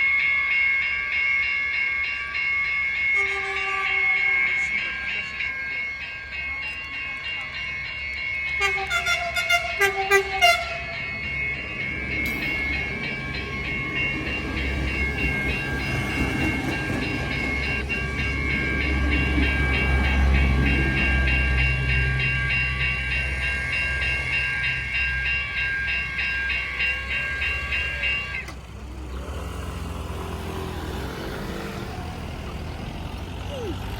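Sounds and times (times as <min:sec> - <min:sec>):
train low rumble: 0:00.0 - 0:33.9
wheels clattering on rail joints: 0:02.8 - 0:33.9
train air horn chord: 0:03.2 - 0:04.6, 0:08.6 - 0:11.0.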